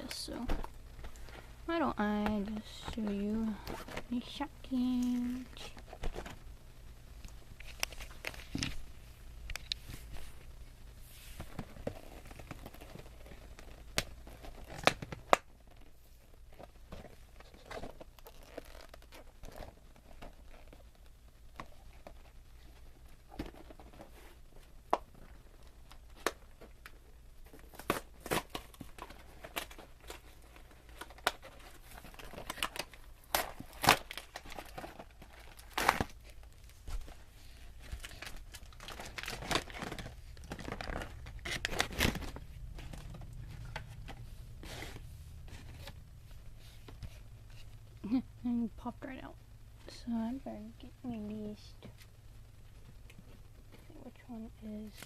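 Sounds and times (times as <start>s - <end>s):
plastic packaging crinkling and tearing: 11.4s - 46.0s.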